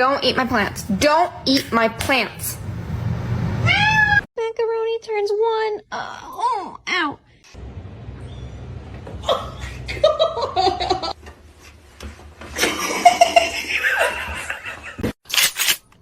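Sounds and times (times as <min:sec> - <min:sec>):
person laughing: 0:09.2 - 0:11.2, 0:12.6 - 0:15.1.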